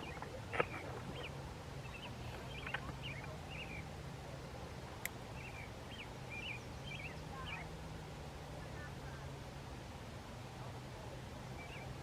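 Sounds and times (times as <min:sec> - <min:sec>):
small birds chirping: 0:00.0 - 0:03.9, 0:05.3 - 0:07.8, 0:11.5 - 0:12.0
faint steady low hum: 0:00.0 - 0:12.0.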